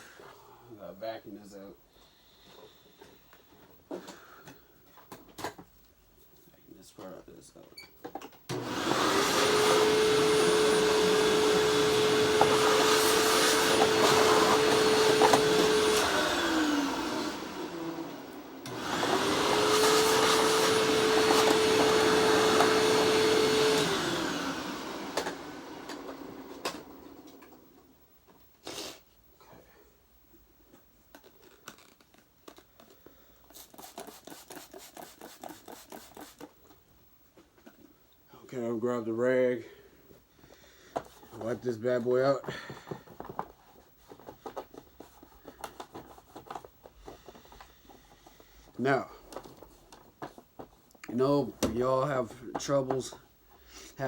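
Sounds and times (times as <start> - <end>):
vacuum cleaner running: 8.5 - 27.8
scraping and rubbing strokes: 33.5 - 36.5.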